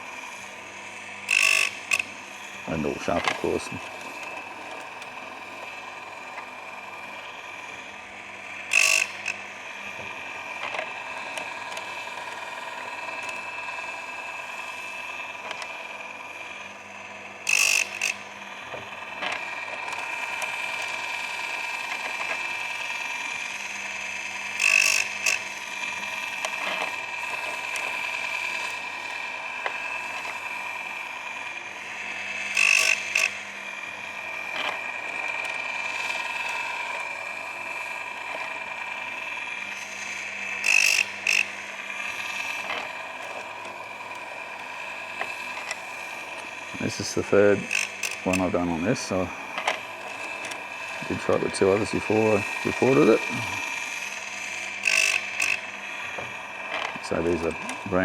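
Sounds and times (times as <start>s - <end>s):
electric sharpener whine: 0.0s - 58.0s
grinding wheel grinding chain tooth: 0.0s - 58.0s.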